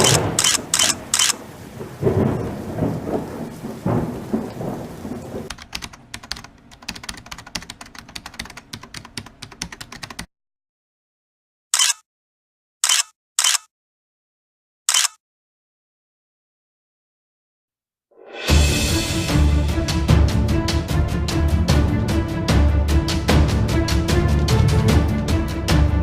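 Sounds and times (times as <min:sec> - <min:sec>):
rapid patter of clicks: 0:00.0 - 0:01.4, 0:05.5 - 0:10.3
sharp bursts: 0:00.0 - 0:01.4
rain-like hiss: 0:00.0 - 0:05.5.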